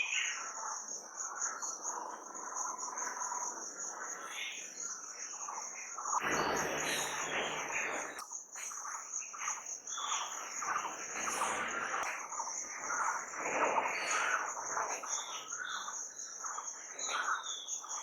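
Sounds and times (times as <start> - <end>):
crickets trilling: 0.0 - 18.0
low noisy sounds: 6.2 - 8.2.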